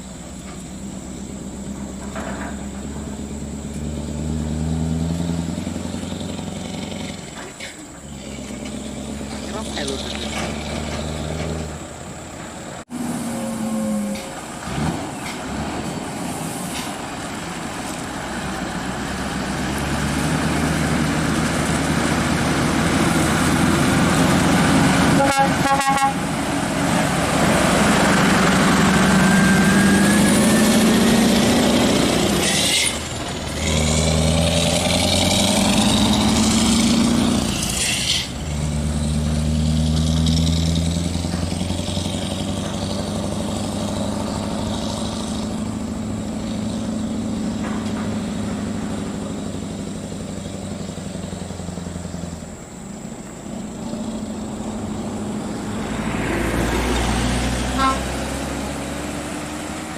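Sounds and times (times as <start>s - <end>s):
diesel engine running under load: 0.0s - 59.9s
horn short pulses: 12.9s - 14.5s, 25.1s - 26.3s, 57.7s - 58.3s.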